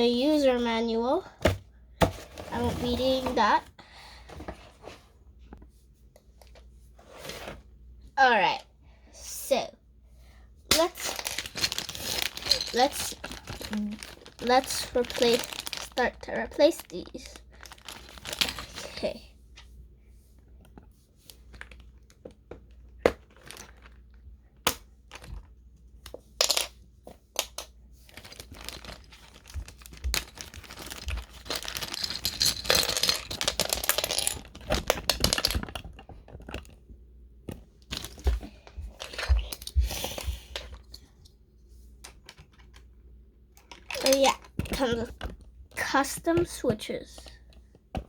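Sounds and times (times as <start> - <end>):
plastic packaging crinkling: 11.0 - 19.1, 23.2 - 24.2, 28.1 - 36.8.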